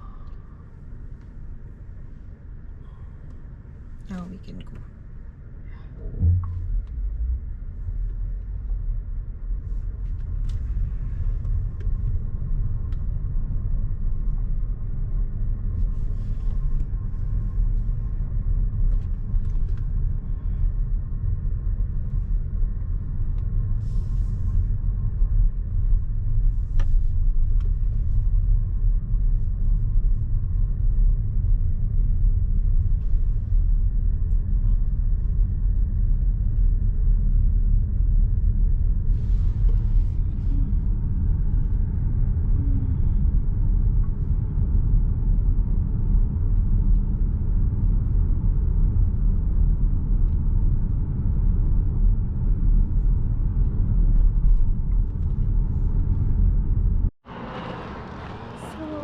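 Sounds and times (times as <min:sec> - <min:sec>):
car driving on road: 0:00.0 - 0:36.0, 0:36.6 - 0:48.4, 0:49.8 - 0:59.0.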